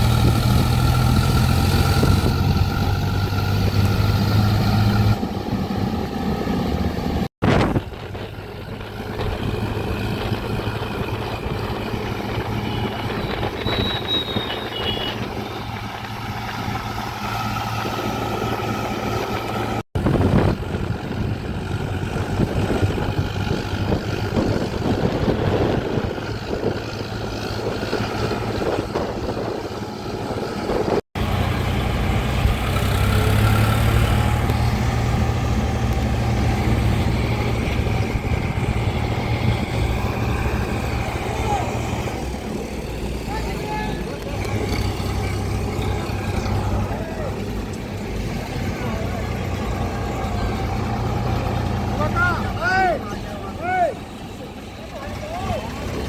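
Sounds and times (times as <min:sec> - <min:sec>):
farm machinery engine running: 0:00.0 - 0:56.0.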